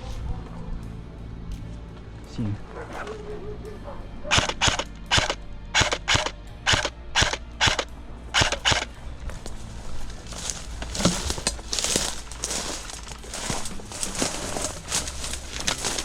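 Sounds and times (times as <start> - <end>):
airsoft rifle shots: 4.3 - 8.9
rustling: 8.4 - 16.0.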